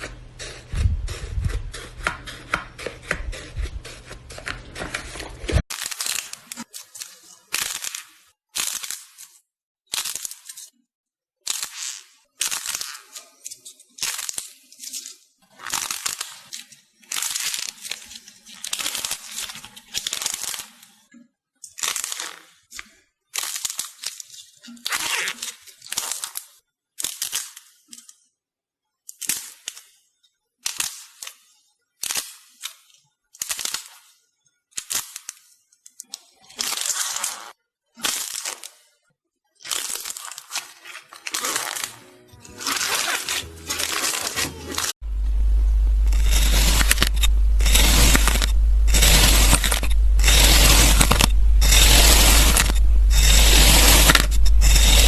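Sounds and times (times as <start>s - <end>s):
low rumble: 45.0s - 55.0s.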